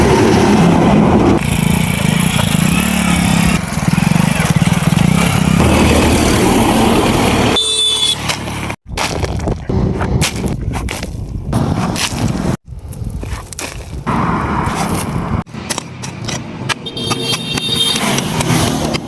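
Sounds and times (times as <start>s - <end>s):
engine running: 0.0s - 8.8s.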